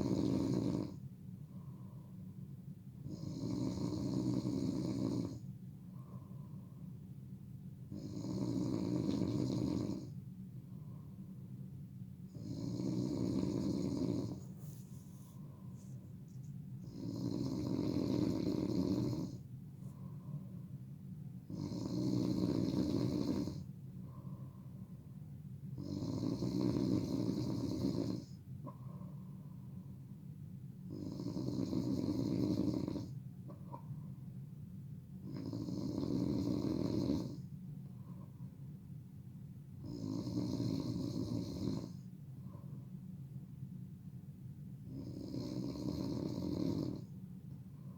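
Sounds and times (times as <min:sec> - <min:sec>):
person snoring loudly: 0:00.0 - 0:01.0, 0:03.1 - 0:05.4, 0:07.9 - 0:10.1, 0:12.3 - 0:14.4, 0:16.8 - 0:19.4, 0:21.5 - 0:23.6, 0:25.8 - 0:28.3, 0:44.9 - 0:47.0
quiet breathing: 0:00.0 - 0:44.2, 0:44.8 - 0:47.9.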